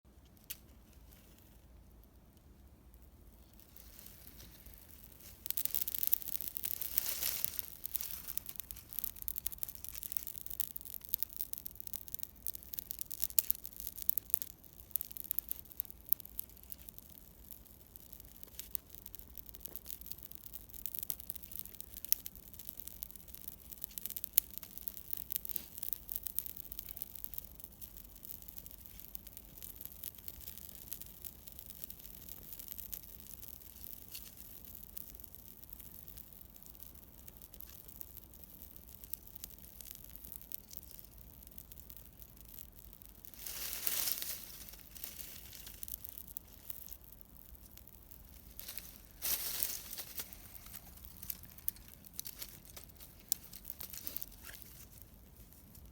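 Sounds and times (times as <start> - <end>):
soft hiss of fire: 0.1 - 55.9
campfire crackling: 0.2 - 55.9.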